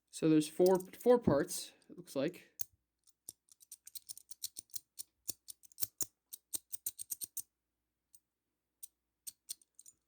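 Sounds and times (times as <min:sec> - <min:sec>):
metal puzzle pieces clicking: 0:00.6 - 0:01.0, 0:02.6 - 0:07.5, 0:08.8 - 0:10.0.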